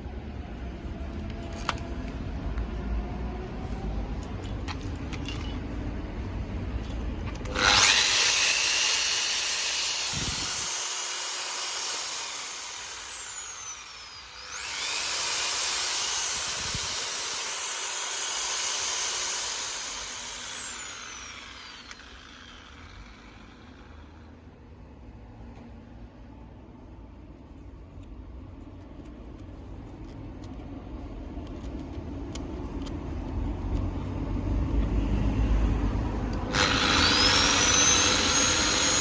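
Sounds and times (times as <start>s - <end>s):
drill motor whining: 7.4s - 24.3s, 36.4s - 39.0s.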